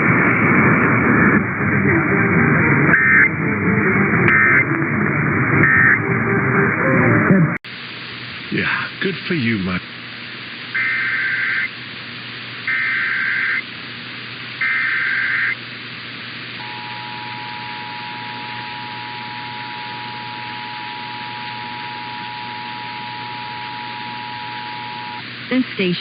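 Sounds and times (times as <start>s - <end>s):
warbling data bursts: 0.7s - 6.8s, 10.8s - 11.7s, 12.7s - 13.6s, 14.6s - 15.6s, 16.6s - 25.2s
steady two-tone attention signal: 1.6s - 7.6s, 10.8s - 11.7s, 12.7s - 13.6s, 16.6s - 25.2s
steady hiss: 7.7s - 26.0s.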